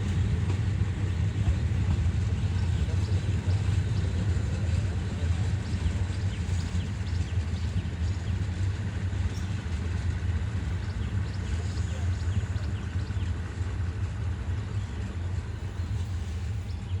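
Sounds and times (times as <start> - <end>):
diesel train engine rumbling: 0.0 - 17.0.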